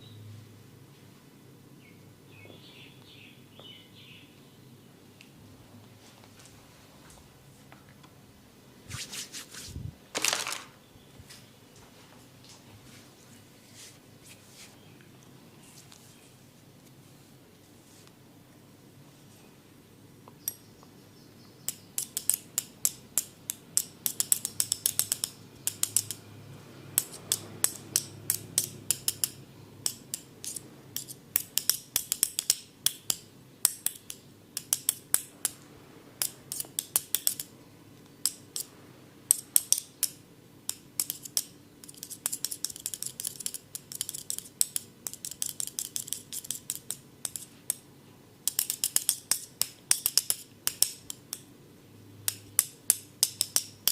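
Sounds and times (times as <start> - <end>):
rapid crisp tool clicks: 21.7 - 26.2, 27.0 - 35.6, 39.3 - 47.8, 48.4 - 51.5, 52.3 - 53.9.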